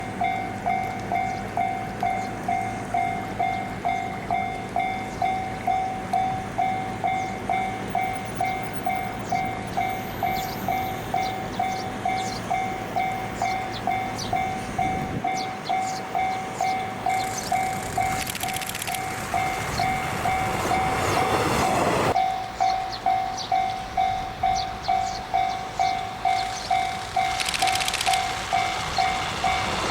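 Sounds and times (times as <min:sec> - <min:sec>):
level crossing bell ringing: 0:22.1 - 0:27.4.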